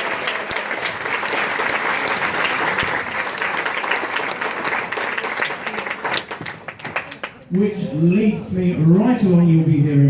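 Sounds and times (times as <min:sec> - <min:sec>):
crowd applauding: 0:00.0 - 0:07.5.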